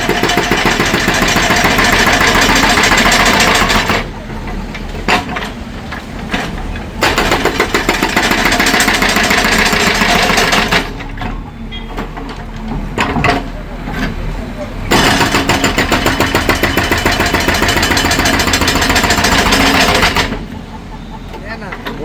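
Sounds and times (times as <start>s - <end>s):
machine engine running: 0.0s - 11.2s, 14.8s - 20.6s
hydraulic concrete breaker hammering: 0.0s - 14.2s, 14.9s - 20.7s.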